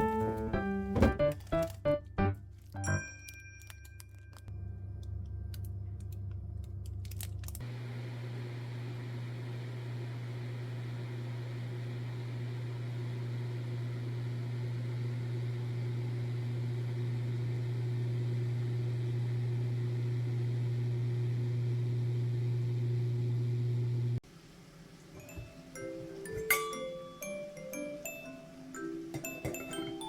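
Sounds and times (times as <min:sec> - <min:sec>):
kitchen appliance humming: 0:04.6 - 0:26.6.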